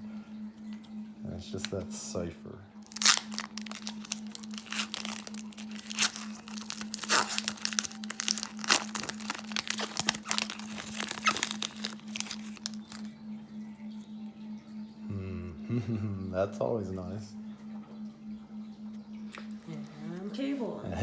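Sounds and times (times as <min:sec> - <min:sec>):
foil wrappers crinkling and tearing: 0:02.8 - 0:13.1
sharp crackle: 0:02.8 - 0:13.2.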